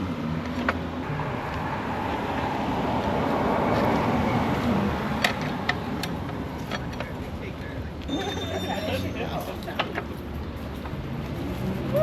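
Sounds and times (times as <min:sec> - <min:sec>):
vehicle passing: 0:00.0 - 0:06.7.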